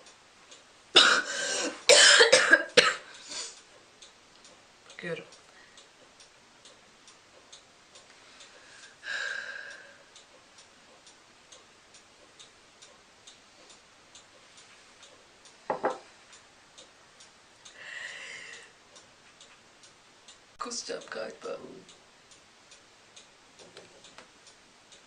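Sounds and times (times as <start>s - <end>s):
clock ticking: 0.0s - 25.0s
woman breathing out heavily: 8.7s - 10.0s, 17.8s - 18.7s.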